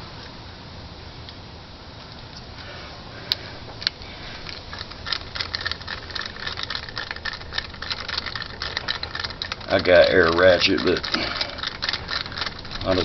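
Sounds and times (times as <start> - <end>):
low steady hum: 0.0 - 13.0
socket ratchet clicking: 4.4 - 13.0.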